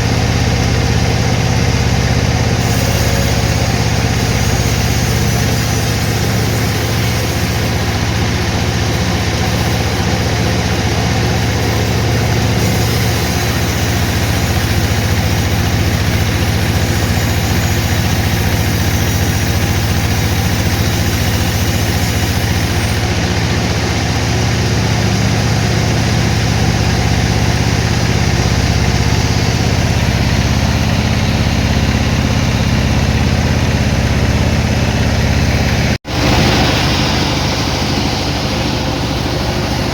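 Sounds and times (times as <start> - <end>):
sawmill machinery humming: 0.0 - 39.9
noisy hiss: 2.6 - 22.9.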